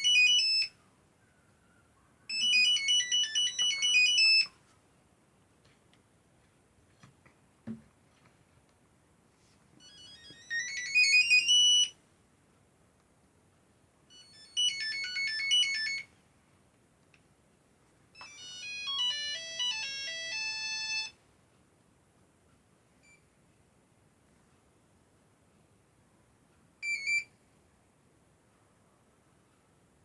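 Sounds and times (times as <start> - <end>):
beeping phone ringtone melodies: 0.0 - 0.7, 2.3 - 4.5, 9.8 - 12.0, 14.1 - 16.1, 18.2 - 21.2.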